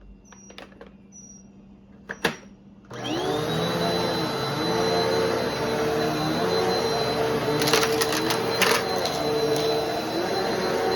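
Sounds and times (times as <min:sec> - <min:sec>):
vacuum motor whining: 0:02.9 - 0:10.9
vacuum cleaner clicks: 0:07.5 - 0:09.9.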